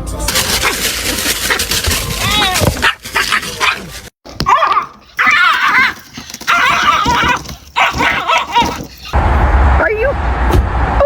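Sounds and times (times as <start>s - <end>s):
dog whining and howling: 2.1s - 9.2s.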